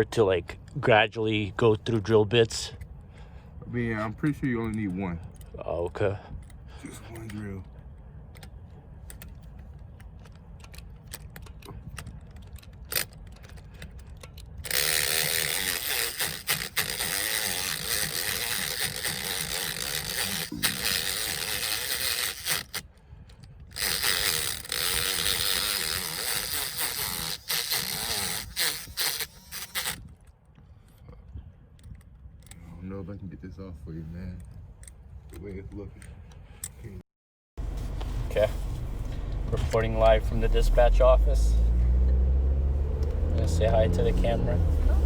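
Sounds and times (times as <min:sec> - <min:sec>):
power drill boring into metal: 0:14.6 - 0:22.8, 0:23.8 - 0:30.1.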